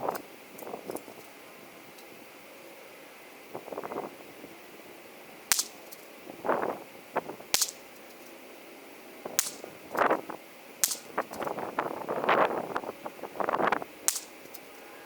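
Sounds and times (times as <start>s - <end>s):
rifle shots: 5.5s - 5.8s, 9.4s - 9.7s, 10.8s - 11.2s.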